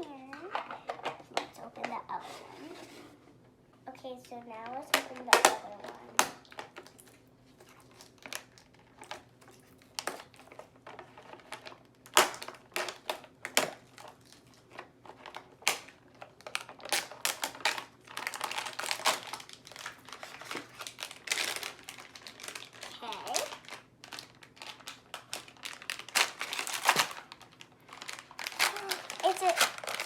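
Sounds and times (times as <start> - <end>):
plastic wrapping crinkling: 4.5 - 30.0.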